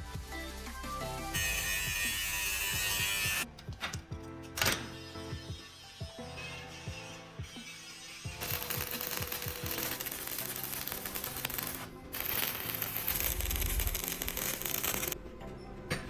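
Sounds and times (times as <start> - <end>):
quiet background music: 0.0 - 16.0
power tool grinding metal: 1.4 - 3.5, 5.8 - 15.2.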